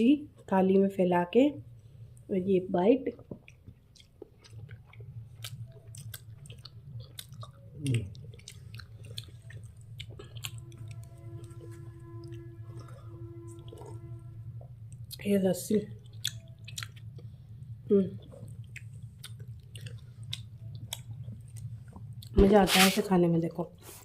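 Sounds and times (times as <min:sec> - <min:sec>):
steady low hum: 0:00.0 - 0:24.0
person chewing food: 0:03.2 - 0:15.3, 0:16.0 - 0:22.3
wet mouth clicks: 0:16.2 - 0:17.0.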